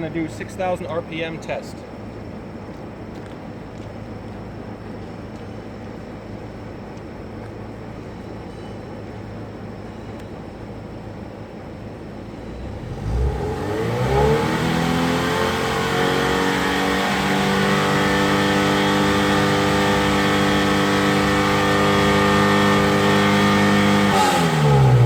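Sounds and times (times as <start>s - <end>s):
car engine revving: 12.4s - 25.0s.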